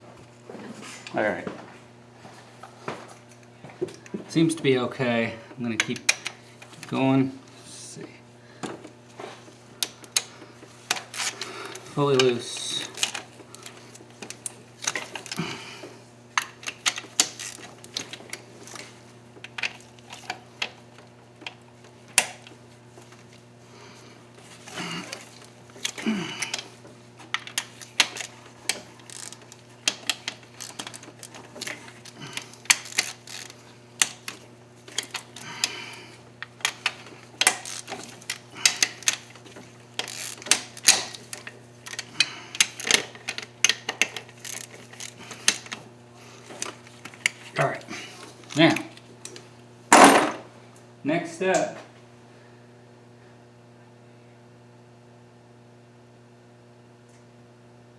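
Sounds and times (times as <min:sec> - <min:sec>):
steady low hum: 0:00.0 - 0:55.5
socket ratchet clicking: 0:27.4 - 0:35.4, 0:36.6 - 0:45.8.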